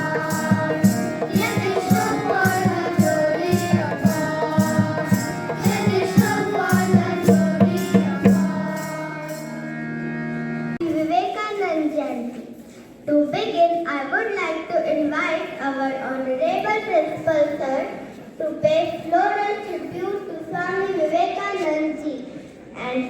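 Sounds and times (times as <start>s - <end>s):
hand drum with jingles: 0.0s - 9.5s.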